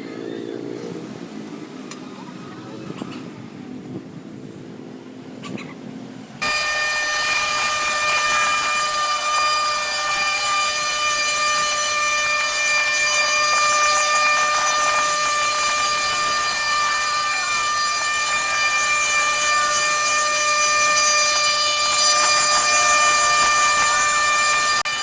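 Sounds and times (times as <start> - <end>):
machine high-pitched whine: 6.4 - 25.0.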